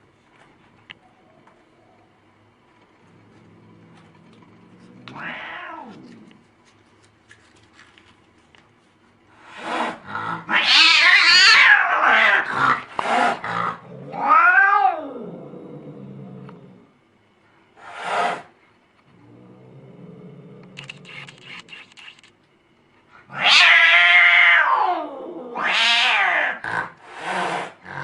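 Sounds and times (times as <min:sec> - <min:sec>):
cat growling: 0:03.0 - 0:06.5, 0:09.4 - 0:16.9, 0:19.1 - 0:21.1, 0:23.2 - 0:28.0
cat hissing: 0:04.8 - 0:06.2, 0:09.4 - 0:15.1, 0:17.8 - 0:18.5, 0:23.2 - 0:28.0
cat yowling: 0:05.1 - 0:06.0, 0:10.3 - 0:12.5, 0:14.1 - 0:15.3, 0:23.3 - 0:26.6.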